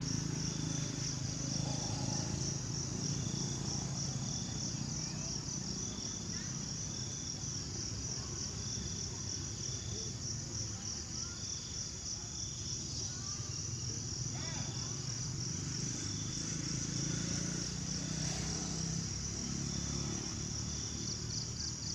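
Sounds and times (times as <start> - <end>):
insects buzzing: 0.0 - 21.9.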